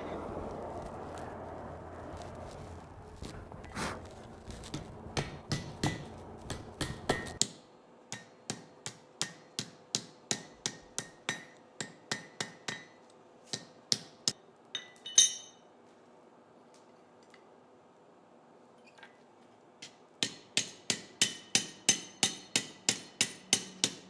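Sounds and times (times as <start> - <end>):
low rumble: 0.0 - 5.2
hammer ringing on anvil: 6.8 - 7.4, 14.8 - 15.6
metal clinking: 14.8 - 15.7.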